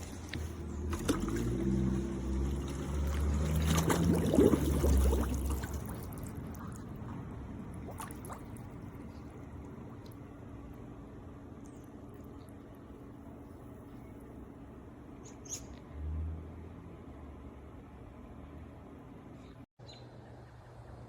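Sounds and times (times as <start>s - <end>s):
water splashing and trickling: 0.0s - 14.3s
pool cleaner motor humming: 0.0s - 15.0s.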